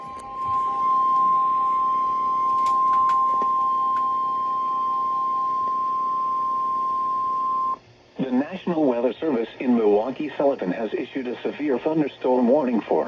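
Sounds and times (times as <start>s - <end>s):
faint beeping tone: 0.0s - 7.8s
steady high alert tone: 0.0s - 7.8s
faint static clicks: 0.0s - 8.8s.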